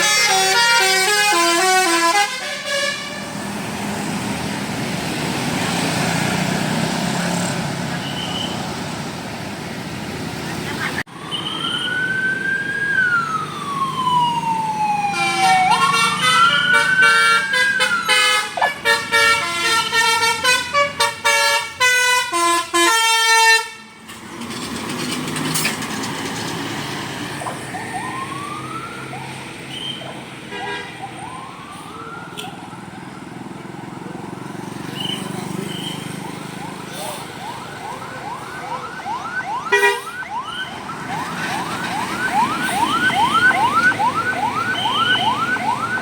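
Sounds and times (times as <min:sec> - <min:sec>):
bus musical horn playing: 0:00.0 - 0:03.3, 0:15.4 - 0:24.0, 0:39.7 - 0:40.2
road traffic noise: 0:00.0 - 0:46.0.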